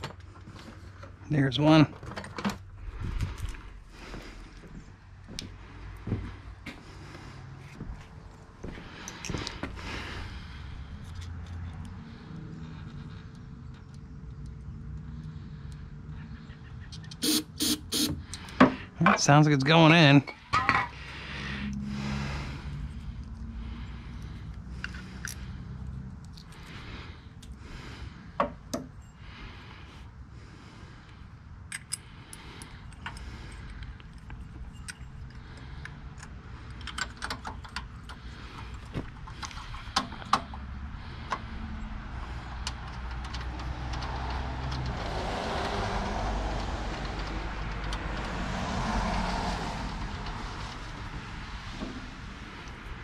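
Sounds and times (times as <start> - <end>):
metal tools clinking: 31.7 - 38.1.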